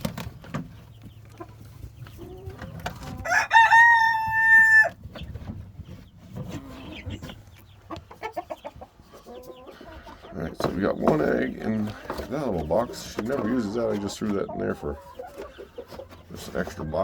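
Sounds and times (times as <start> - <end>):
hens clucking softly: 0.9 - 3.3, 4.0 - 17.0
rooster crowing: 3.2 - 4.9.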